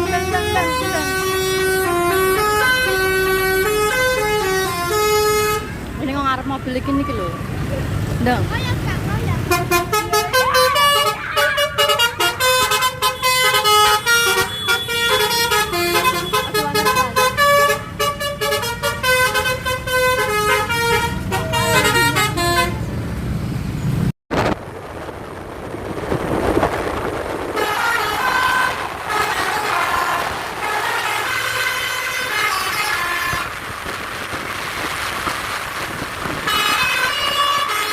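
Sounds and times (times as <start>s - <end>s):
musical air horn playing a tune: 0.0s - 5.8s, 9.5s - 22.8s, 27.6s - 33.6s, 36.4s - 37.9s
bus engine running: 0.0s - 37.9s
street noise: 0.0s - 37.9s.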